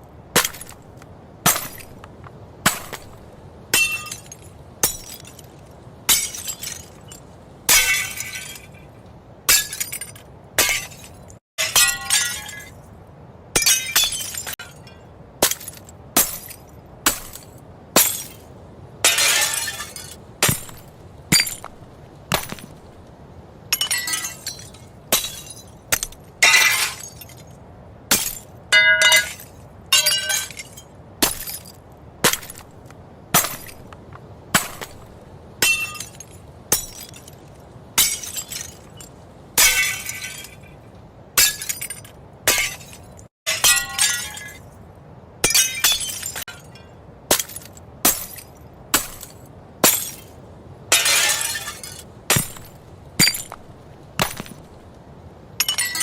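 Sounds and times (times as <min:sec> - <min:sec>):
glass smashing: 0:00.4 - 0:00.8, 0:01.5 - 0:02.0, 0:03.8 - 0:08.8, 0:09.5 - 0:12.8, 0:13.6 - 0:22.8, 0:23.7 - 0:32.7, 0:33.4 - 0:33.9, 0:34.6 - 0:37.4, 0:38.0 - 0:40.7, 0:41.4 - 0:44.7, 0:45.4 - 0:50.3, 0:50.9 - 0:54.7, 0:55.6 - 0:56.0
glass shards tinkling: 0:03.8 - 0:08.9, 0:09.5 - 0:12.8, 0:13.6 - 0:18.5, 0:19.1 - 0:22.8, 0:23.7 - 0:32.7, 0:35.6 - 0:40.8, 0:41.4 - 0:44.7, 0:45.4 - 0:50.3, 0:50.9 - 0:54.7, 0:55.6 - 0:56.0.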